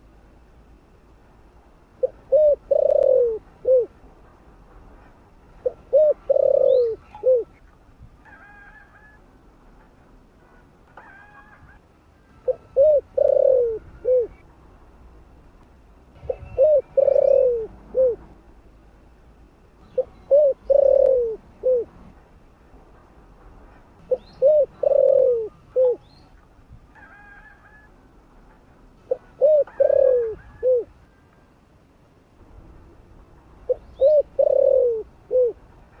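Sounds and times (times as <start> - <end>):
dove cooing: 2.0 - 4.0, 5.6 - 7.6, 11.0 - 14.4, 16.2 - 18.3, 20.0 - 22.0, 24.0 - 26.1, 29.0 - 31.2, 33.7 - 35.6.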